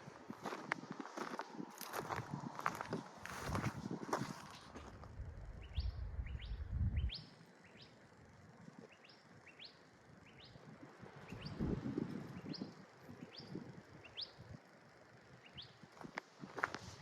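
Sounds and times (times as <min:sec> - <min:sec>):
wind buffeting microphone: 0:00.0 - 0:07.3, 0:10.8 - 0:14.6
bird chirping: 0:05.5 - 0:14.6, 0:15.3 - 0:15.9.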